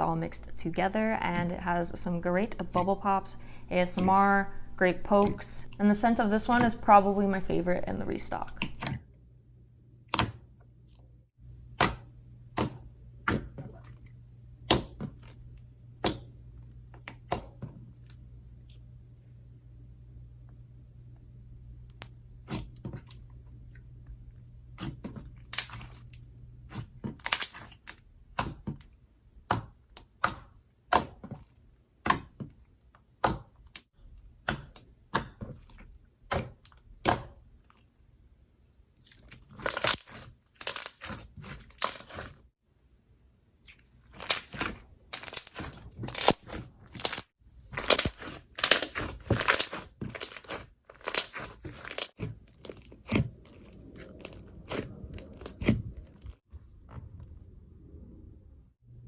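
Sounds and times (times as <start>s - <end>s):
slime squeezed with wet pops: 25.5s - 26.1s.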